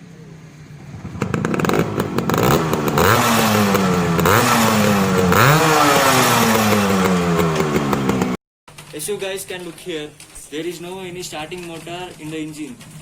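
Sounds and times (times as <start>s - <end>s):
two-stroke motorcycle engine revving: 0.0s - 8.4s
exhaust popping: 0.0s - 13.0s.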